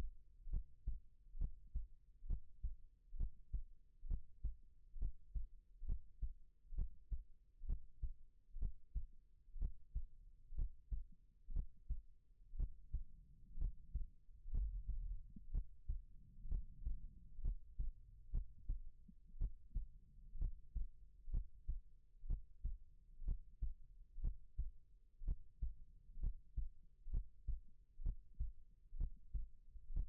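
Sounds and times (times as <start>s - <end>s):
heartbeat thumps: 0.5s - 30.0s
low rumble: 12.6s - 21.8s.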